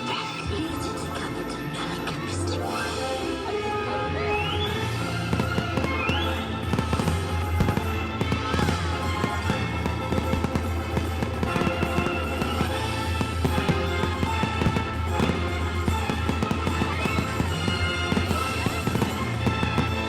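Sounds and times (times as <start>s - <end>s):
loud display music: 0.0s - 20.0s
firework rising whistles: 4.1s - 20.0s
fireworks banging and crackling: 4.2s - 20.0s.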